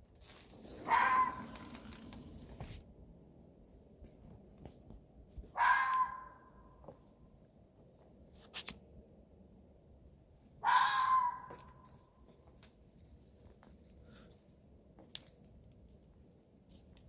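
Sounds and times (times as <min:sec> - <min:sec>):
harsh animal call: 0:00.7 - 0:02.0.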